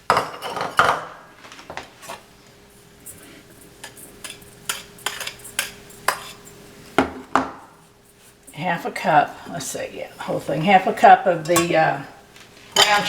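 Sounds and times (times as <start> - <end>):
faint steady hum: 0.0 - 13.0
utensils clinking on a pan: 3.8 - 6.4, 11.4 - 12.0, 12.7 - 13.0.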